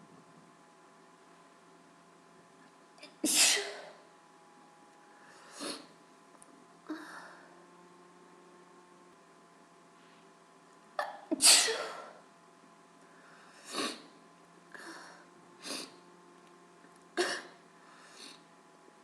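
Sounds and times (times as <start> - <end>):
woman sneezing: 3.1 - 4.0, 11.0 - 12.2.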